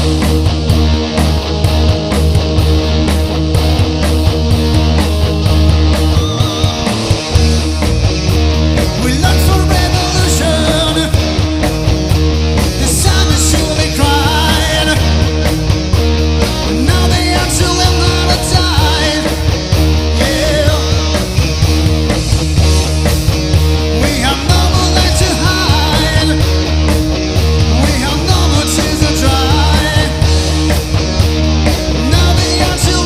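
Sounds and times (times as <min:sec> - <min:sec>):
rock band playing live: 0:00.0 - 0:33.0
person singing: 0:08.9 - 0:11.4, 0:12.8 - 0:15.4, 0:16.7 - 0:19.5, 0:24.0 - 0:26.5, 0:27.7 - 0:30.4, 0:32.0 - 0:33.0.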